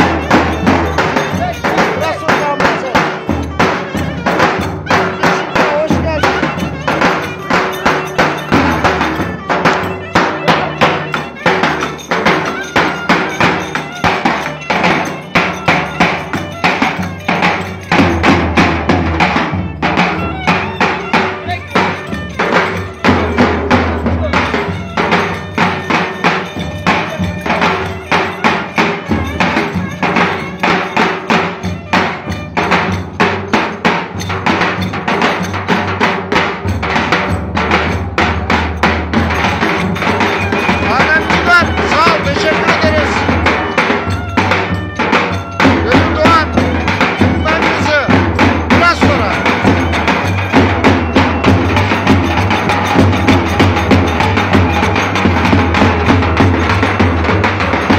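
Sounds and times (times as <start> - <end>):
melody instrument: 0.0 - 33.1, 39.1 - 57.9
drum strokes in dance rhythm: 0.0 - 57.9.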